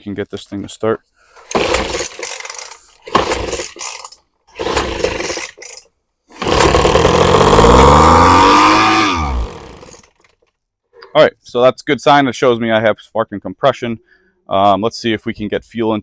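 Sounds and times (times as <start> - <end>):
recoil starter pulls: 1.4 - 10.4
leaf blower engine running: 1.5 - 3.9, 4.6 - 10.1.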